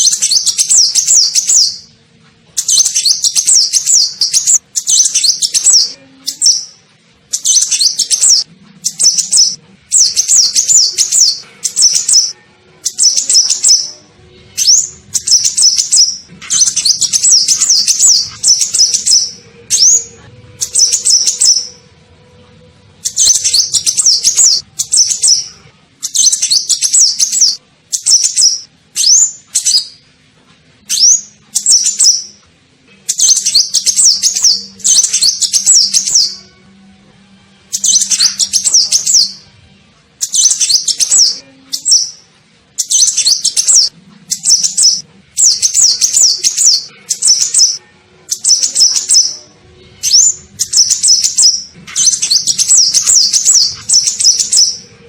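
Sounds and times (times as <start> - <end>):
sunbird high twittering chirps: 0.0 - 1.9, 2.6 - 12.3, 12.9 - 13.9, 14.6 - 21.8, 23.1 - 30.0, 30.8 - 32.4, 33.1 - 36.4, 37.8 - 39.4, 40.2 - 42.2, 42.8 - 49.4, 50.0 - 54.8.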